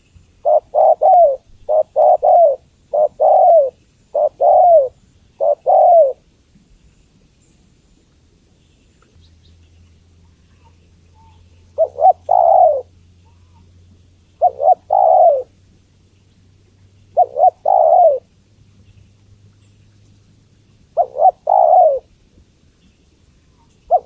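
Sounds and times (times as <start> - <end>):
dove cooing: 0.0 - 6.3, 10.6 - 15.6, 17.0 - 18.4, 20.8 - 22.2, 23.6 - 24.0.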